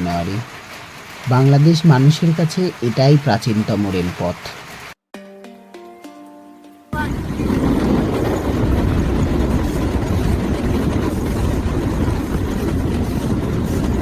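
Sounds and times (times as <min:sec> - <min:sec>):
train rumbling on track: 0:07.0 - 0:14.0.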